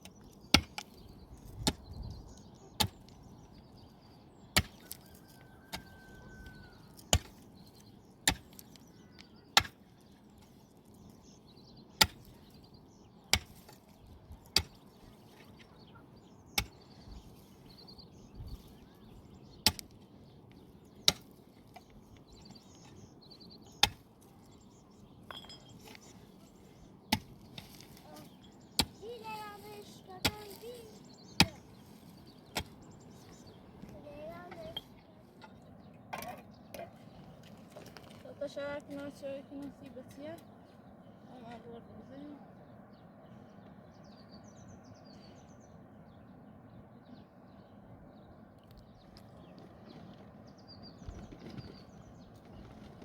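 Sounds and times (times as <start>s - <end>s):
axe chopping wood: 12.0s - 12.3s.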